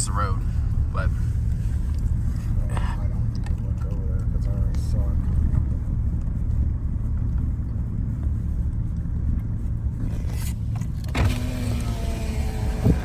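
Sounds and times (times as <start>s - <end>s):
car engine and road noise: 0.0s - 13.0s.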